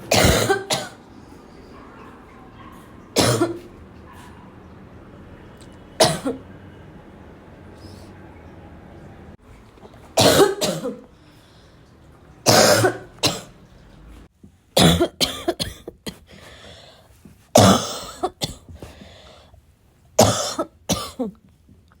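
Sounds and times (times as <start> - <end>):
person coughing: 0.0 - 1.0, 3.2 - 3.7, 6.0 - 6.4, 10.2 - 11.1, 12.5 - 13.5, 14.8 - 16.4, 17.6 - 18.7, 20.2 - 21.4.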